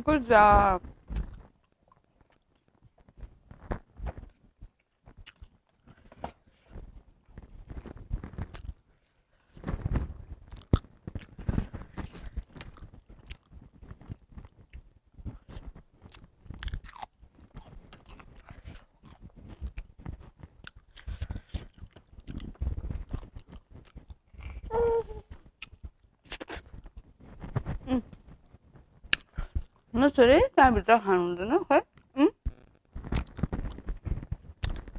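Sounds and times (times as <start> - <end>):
chewing and crunching food: 0.8 - 30.0, 31.8 - 34.9
high-pitched vocal sound: 24.7 - 25.3.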